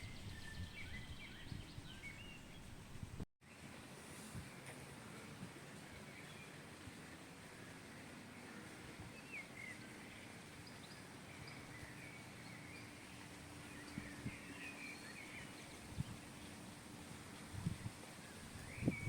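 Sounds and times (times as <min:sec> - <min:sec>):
small birds chirping: 0:00.0 - 0:03.2, 0:08.4 - 0:16.7, 0:17.7 - 0:19.0.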